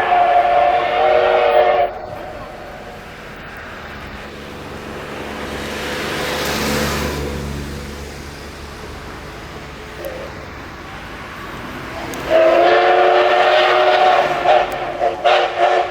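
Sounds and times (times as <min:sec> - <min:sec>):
steam whistle: 0:00.0 - 0:03.4, 0:12.2 - 0:15.9
steam hiss: 0:00.0 - 0:15.9
steam locomotive rumble: 0:00.0 - 0:15.9.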